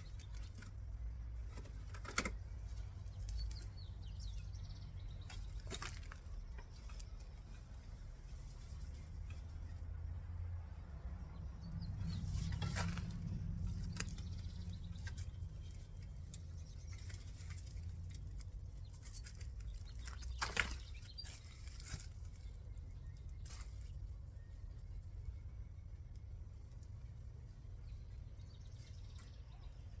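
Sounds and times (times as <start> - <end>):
low steady rumble: 0.0 - 30.0
soil being dug by hand: 12.0 - 24.0.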